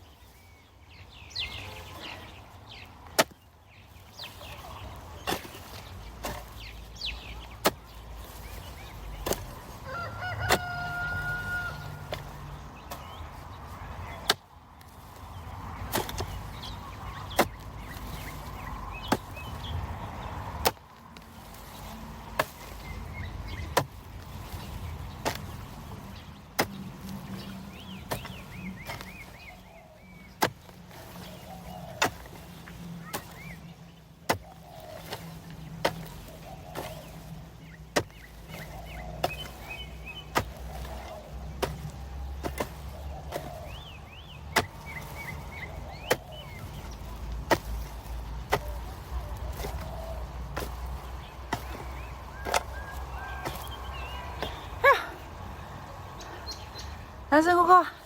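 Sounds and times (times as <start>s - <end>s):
birds chirping: 0.0s - 58.0s.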